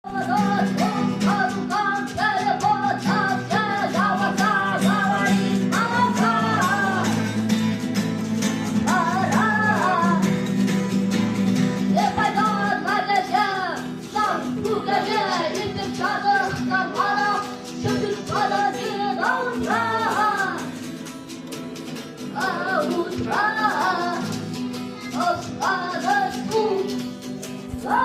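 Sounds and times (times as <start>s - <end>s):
guitar melodic phrase: 0.0s - 28.0s.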